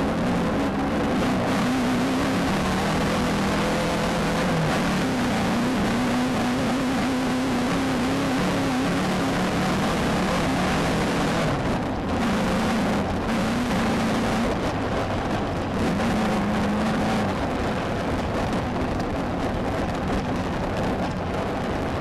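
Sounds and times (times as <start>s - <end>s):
race car engine running hard: 0.0s - 22.0s
wind and road noise: 0.0s - 22.0s.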